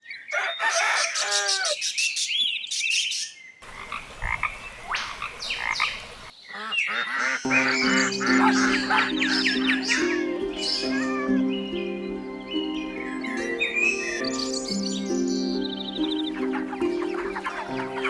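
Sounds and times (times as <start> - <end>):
animal calls: 0.3 - 1.9, 3.7 - 12.0, 15.4 - 18.0
music: 7.5 - 18.0.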